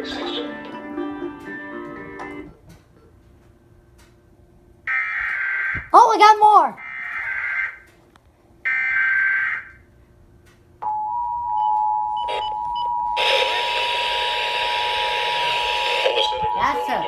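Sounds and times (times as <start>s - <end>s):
two-tone attention signal: 11.5s - 17.0s
screechy digital data bursts: 13.2s - 17.0s.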